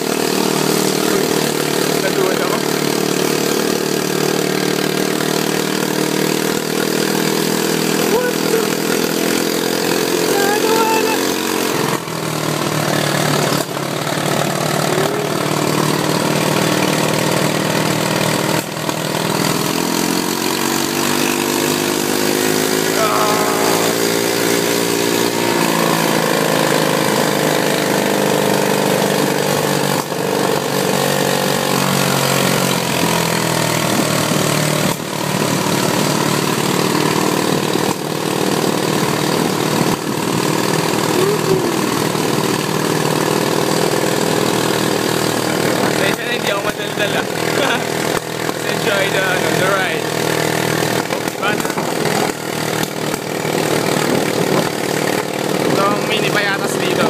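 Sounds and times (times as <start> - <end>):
atv engine running: 0.0 - 57.0.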